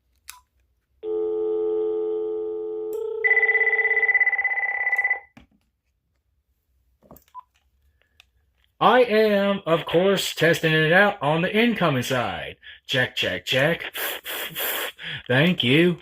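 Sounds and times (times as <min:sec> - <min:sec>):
telephone dial tone: 0:01.0 - 0:05.4
electronic phone ringer trilling: 0:03.0 - 0:05.3.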